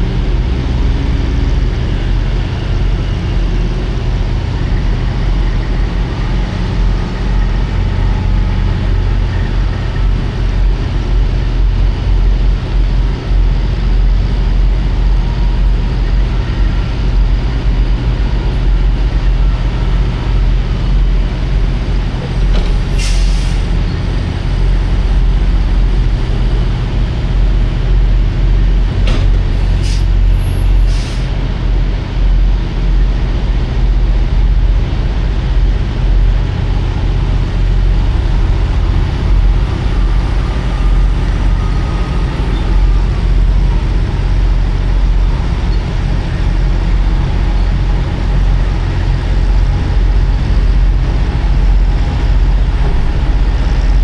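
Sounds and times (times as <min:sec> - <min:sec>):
truck diesel engine running: 0:00.0 - 0:31.6, 0:35.0 - 0:54.0
air brake hisses: 0:22.6 - 0:23.8, 0:29.4 - 0:31.3.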